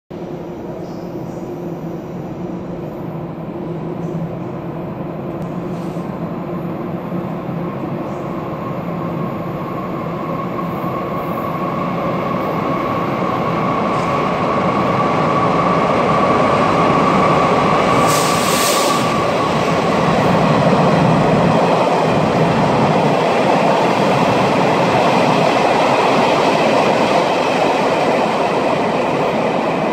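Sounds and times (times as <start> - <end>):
passenger train passing: 0.1 - 29.9
short hiss: 18.0 - 19.1.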